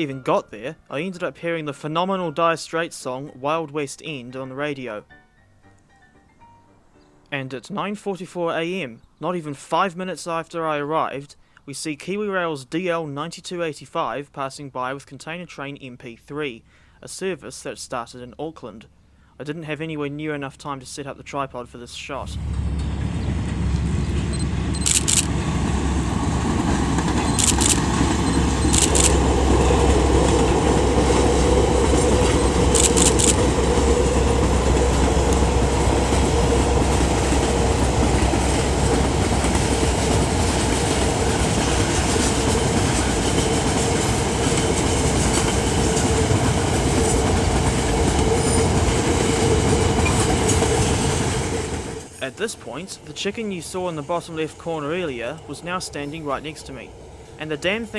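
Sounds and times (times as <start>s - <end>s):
train wheels rumbling on rail: 22.2s - 52.1s
steady hum: 22.3s - 39.9s
sharp clicks: 24.0s - 26.3s, 27.0s - 35.8s.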